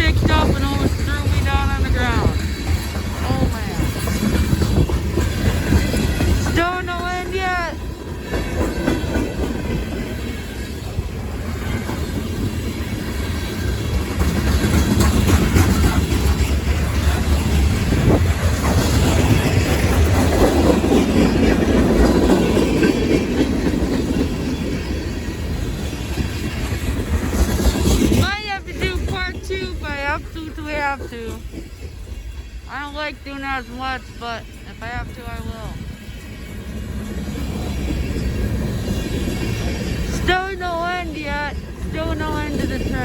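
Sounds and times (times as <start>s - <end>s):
wheels clicking over rail joints: 0.0s - 32.6s
freight train rolling past: 0.0s - 43.0s.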